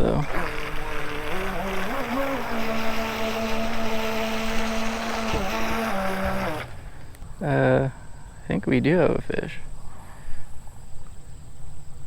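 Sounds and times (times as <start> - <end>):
electric motor whine: 0.0 - 7.8.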